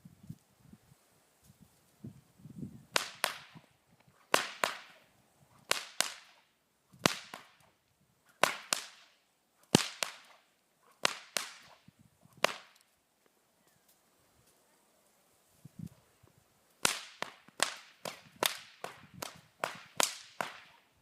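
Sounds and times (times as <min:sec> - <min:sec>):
whip cracking: 0:02.9 - 0:12.9, 0:16.8 - 0:20.8.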